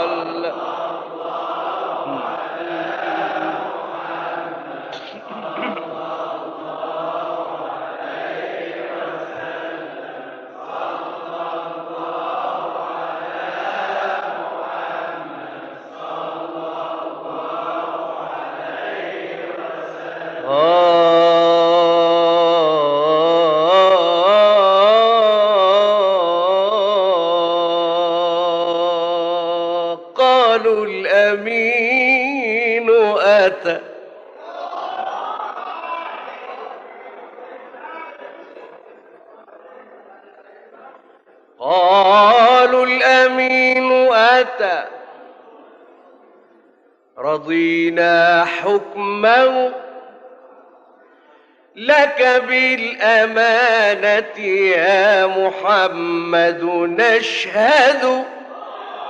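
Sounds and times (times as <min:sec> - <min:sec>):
men chanting a devotional hymn: 0:00.0 - 0:59.0.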